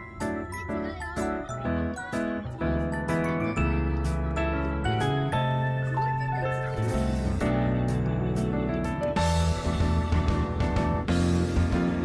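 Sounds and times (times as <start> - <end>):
bright jingling background music: 0.0 - 8.3.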